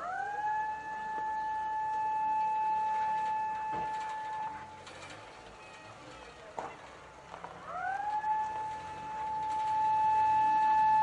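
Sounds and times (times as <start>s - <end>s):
warning siren steady tone: 0.0s - 4.8s, 7.6s - 11.0s.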